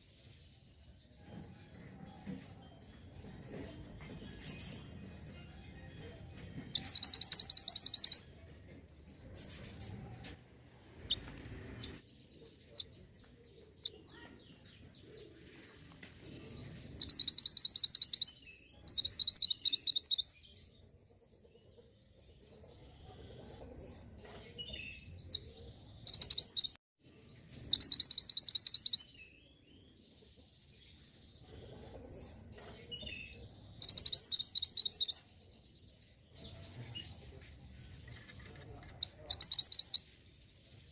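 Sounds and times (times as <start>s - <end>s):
faint bird chirps: 6.7s - 8.3s, 16.4s - 20.6s, 22.7s - 30.5s, 31.3s - 35.6s, 36.3s - 40.9s
songbird trilling: 6.8s - 8.3s, 17.0s - 20.4s, 26.1s - 26.8s, 27.8s - 29.1s, 33.8s - 35.2s, 39.0s - 40.0s.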